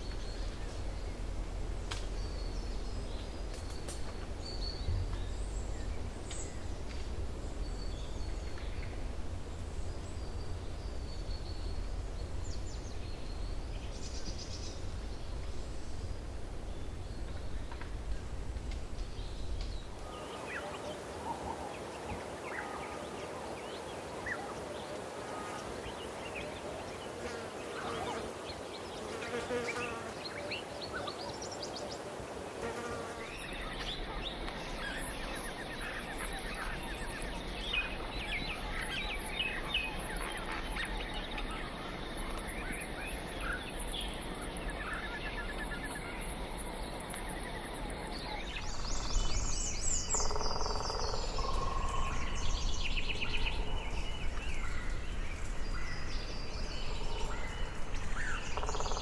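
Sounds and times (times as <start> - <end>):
insects buzzing and chirping: 19.8 - 33.5, 41.9 - 59.0
birds chirping and trilling: 20.0 - 46.3, 47.4 - 59.0.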